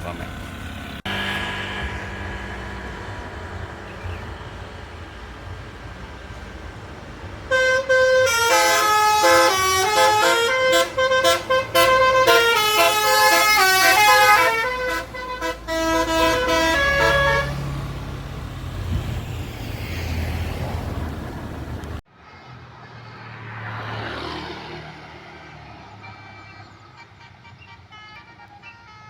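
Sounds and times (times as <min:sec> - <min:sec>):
bus engine rumbling: 0:00.0 - 0:23.2, 0:25.1 - 0:29.0
musical air horn playing tune: 0:07.5 - 0:17.7.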